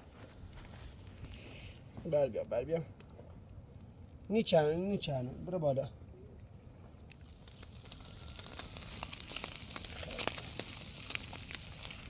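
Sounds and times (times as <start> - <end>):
wood fire crackling: 0.0 - 12.0
sharp pops of fire: 6.3 - 12.0.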